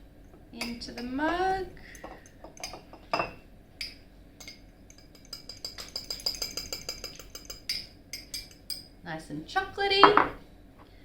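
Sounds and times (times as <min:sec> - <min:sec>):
spoon clinking against a mug: 0:01.9 - 0:08.9.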